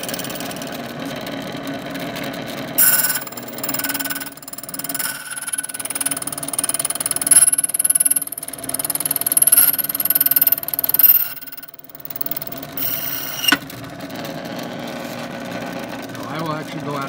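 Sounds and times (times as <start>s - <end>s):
key cutting machine whine: 0.0s - 0.8s, 2.8s - 13.6s
sharp click: 2.8s - 13.6s.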